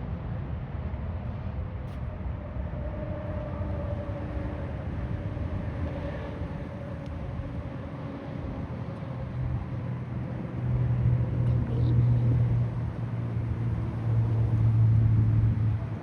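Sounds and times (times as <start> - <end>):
vehicle engine rumble: 0.9 - 16.0.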